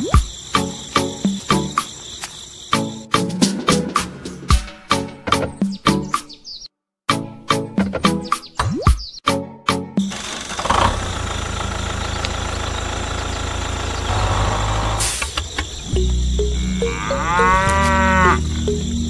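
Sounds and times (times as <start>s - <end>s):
cow mooing: 16.5s - 18.5s.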